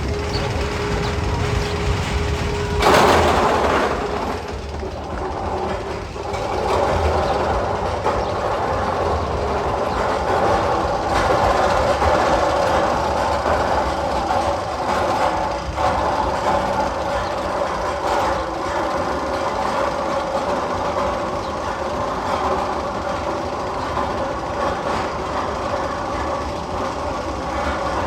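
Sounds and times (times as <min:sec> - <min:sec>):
sustained tones: 0:00.0 - 0:06.4
train-like rumble and clatter: 0:00.0 - 0:28.0.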